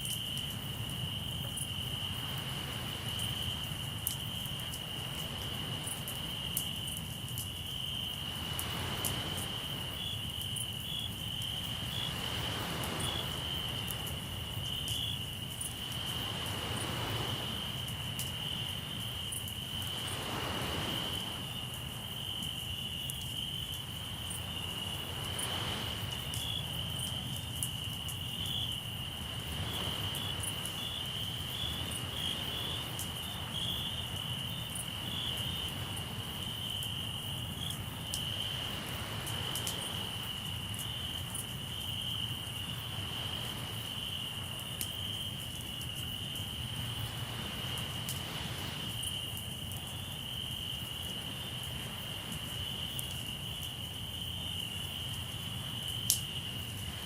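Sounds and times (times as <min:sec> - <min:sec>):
campfire crackling: 0:00.0 - 0:57.0
crickets trilling: 0:00.0 - 0:57.0
waves washing in: 0:01.9 - 0:04.1, 0:04.8 - 0:06.6, 0:08.1 - 0:22.1, 0:23.8 - 0:27.6, 0:29.0 - 0:36.4, 0:37.4 - 0:40.6, 0:42.3 - 0:44.7, 0:46.5 - 0:49.4.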